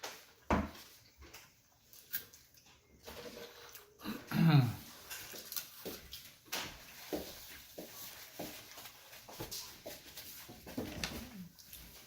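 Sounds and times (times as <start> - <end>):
person chewing: 1.3 - 7.1.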